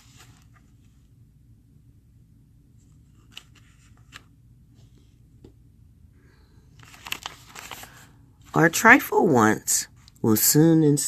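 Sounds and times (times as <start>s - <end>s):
low steady hum: 0.0s - 11.0s
rustling: 6.8s - 8.6s.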